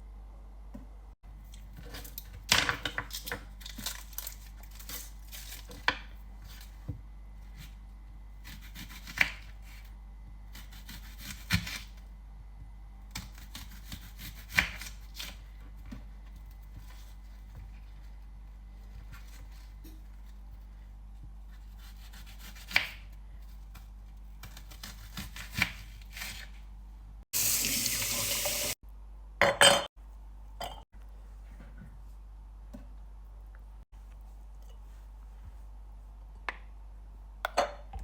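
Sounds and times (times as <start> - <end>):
low steady hum: 0.0 - 14.3.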